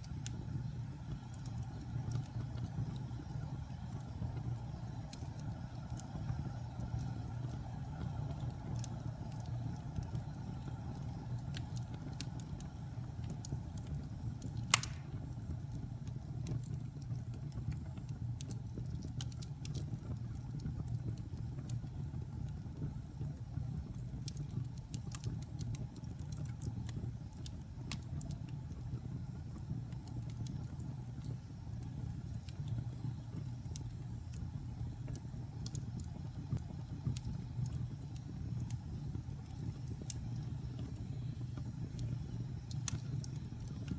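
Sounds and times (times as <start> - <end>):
fire crackling and snapping: 0.0 - 43.9
low rumble of flames: 0.0 - 43.9
loud pop of fire: 14.7 - 15.3.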